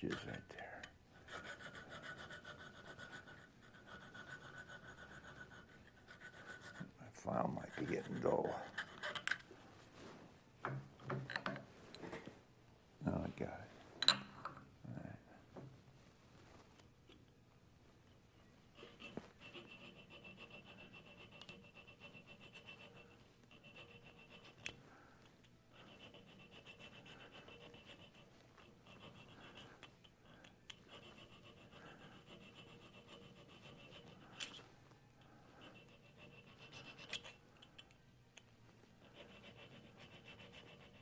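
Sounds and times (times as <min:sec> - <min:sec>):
hand file scraping metal: 0:01.2 - 0:06.9, 0:07.5 - 0:09.4, 0:18.8 - 0:24.8, 0:25.7 - 0:34.6, 0:35.6 - 0:37.4, 0:39.0 - 0:41.0.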